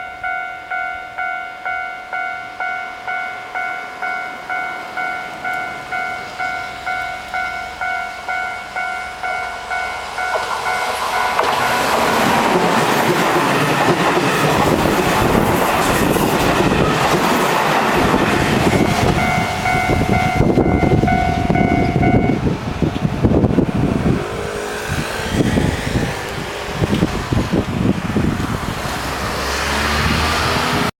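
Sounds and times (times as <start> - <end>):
level-crossing warning bell: 0.0 - 23.0
electric train passing: 0.0 - 30.9
train wheels clacking on rail joints: 5.3 - 27.7.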